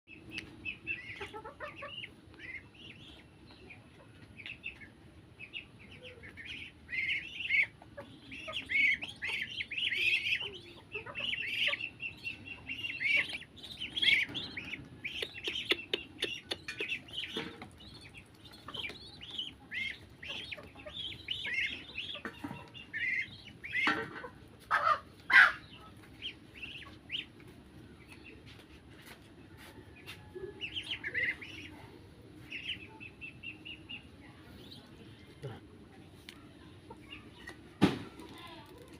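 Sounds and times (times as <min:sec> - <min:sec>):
small birds chirping: 0:00.1 - 0:38.9.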